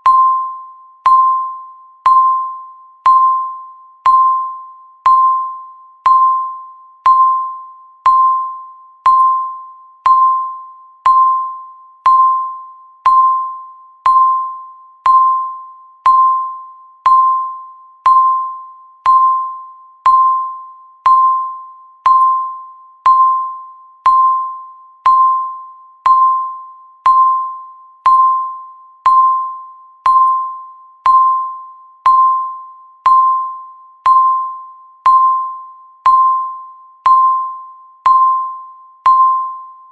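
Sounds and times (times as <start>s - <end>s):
timer electronic beeps: 0.0s - 39.9s.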